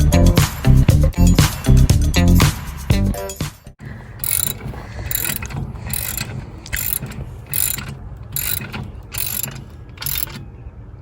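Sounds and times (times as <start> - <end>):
ratchet wrench clicking: 4.2 - 10.4.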